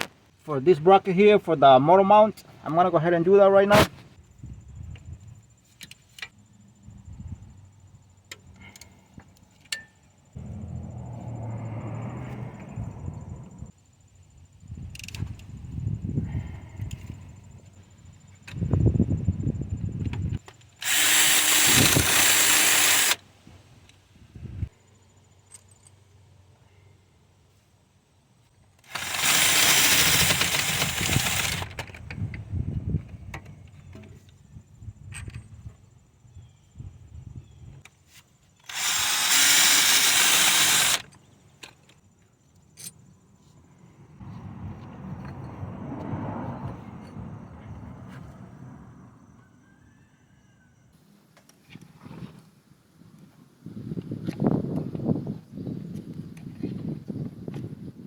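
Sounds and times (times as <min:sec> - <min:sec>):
impact wrench bursts: 0:20.8 - 0:23.2, 0:28.8 - 0:31.9, 0:38.6 - 0:41.2.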